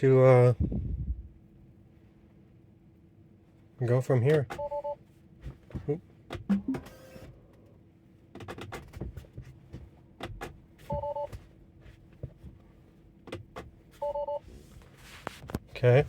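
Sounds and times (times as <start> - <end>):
two-tone alert chime: 6.5 - 6.8.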